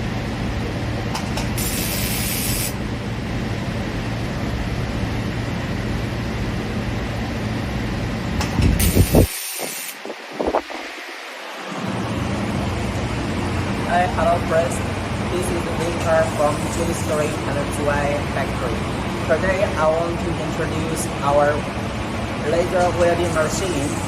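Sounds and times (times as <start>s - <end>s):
low factory rumble: 0.0s - 24.0s
laser welder hissing crackle: 1.4s - 2.8s, 8.8s - 10.0s.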